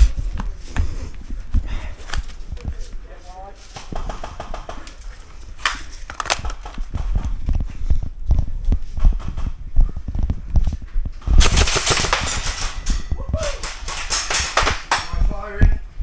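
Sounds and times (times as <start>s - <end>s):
footfalls: 11.3s - 15.3s.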